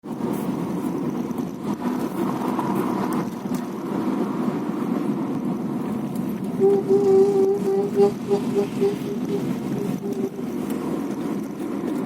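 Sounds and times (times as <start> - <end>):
car road noise: 0.0 - 12.0.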